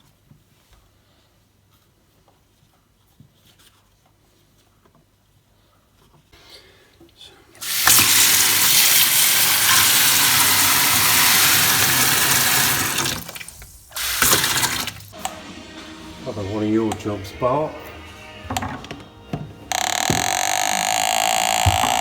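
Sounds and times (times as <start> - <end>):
tap water running into sink: 7.6 - 15.3, 19.7 - 22.0.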